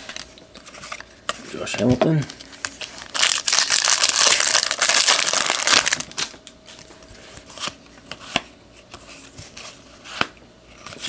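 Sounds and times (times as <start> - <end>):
foil wrapper crinkling: 0.0 - 6.4.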